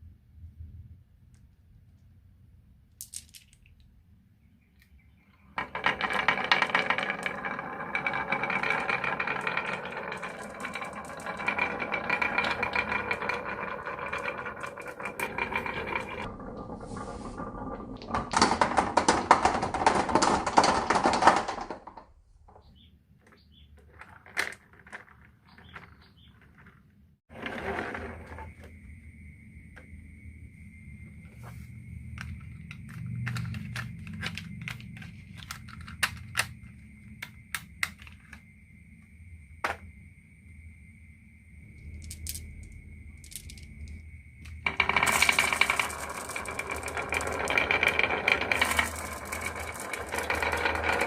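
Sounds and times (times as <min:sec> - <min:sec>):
marble clicks: 0:02.9 - 0:03.9, 0:05.6 - 0:22.6, 0:41.8 - 0:51.0
marbles rattling down wooden run: 0:05.6 - 0:22.6, 0:23.8 - 0:28.6, 0:41.8 - 0:51.0.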